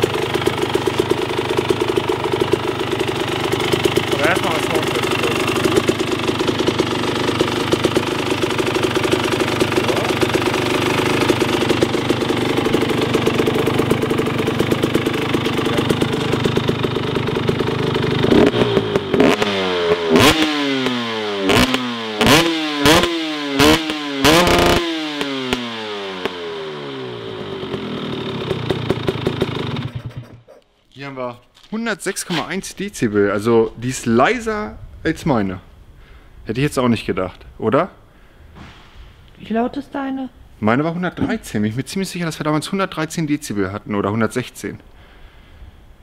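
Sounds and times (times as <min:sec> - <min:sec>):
engine throttle blips: 0:00.0 - 0:30.5
motorcycle engine idling: 0:00.0 - 0:30.5.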